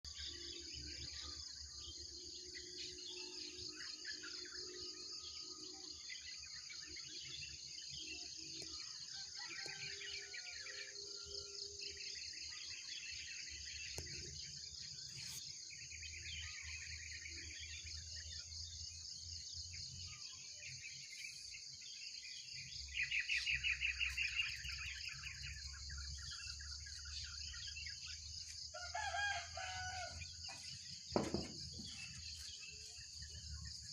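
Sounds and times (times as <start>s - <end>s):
birds chirping and singing: 0.0s - 33.9s
insect trill: 0.1s - 33.9s.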